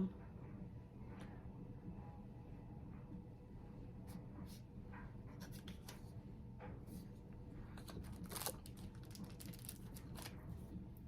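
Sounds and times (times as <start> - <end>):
packaging rustling: 7.8 - 10.5.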